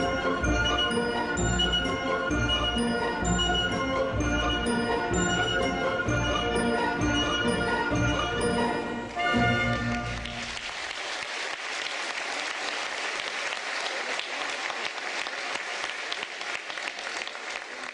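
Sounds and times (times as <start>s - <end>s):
audience applause: 9.5s - 17.9s.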